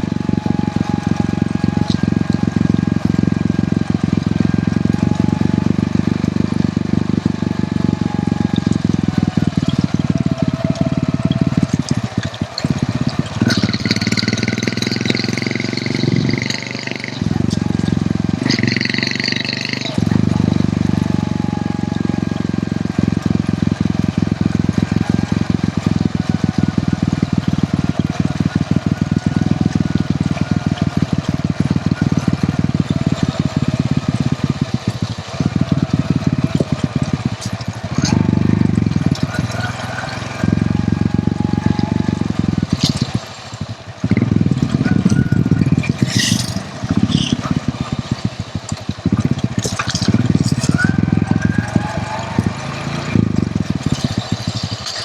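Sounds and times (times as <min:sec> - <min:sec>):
motorcycle engine running: 0:00.0 - 0:55.0.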